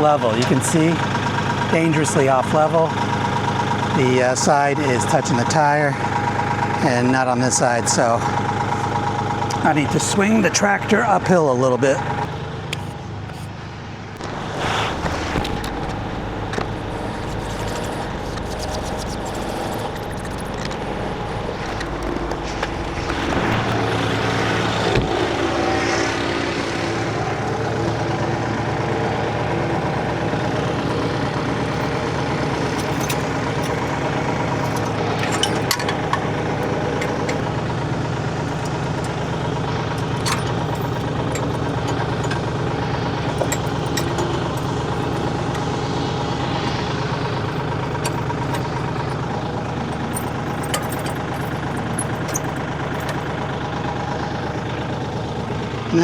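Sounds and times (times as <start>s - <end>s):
tractor diesel engine running: 0.0s - 56.0s
clicks and knocks: 30.9s - 37.7s, 38.4s - 42.6s, 43.2s - 45.9s, 47.4s - 53.3s.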